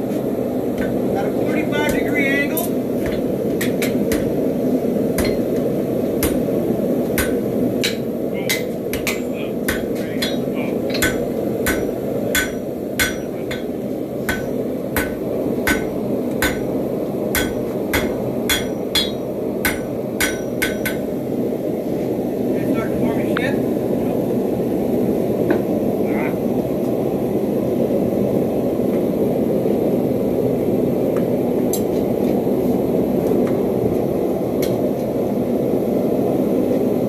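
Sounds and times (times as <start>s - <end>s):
hammer blows on anvil: 7.2s - 13.7s, 14.3s - 16.7s, 17.3s - 21.1s.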